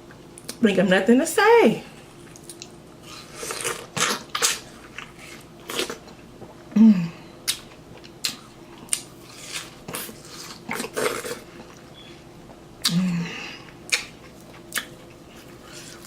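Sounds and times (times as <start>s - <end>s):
chewing crunchy snack: 2.2s - 6.5s, 7.4s - 11.9s, 13.6s - 16.0s.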